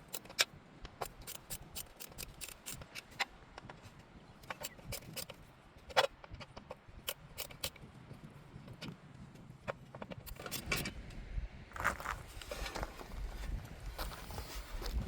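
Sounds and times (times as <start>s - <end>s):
metal tools and screws clicking: 0.0s - 3.2s, 4.4s - 7.9s, 10.2s - 10.9s.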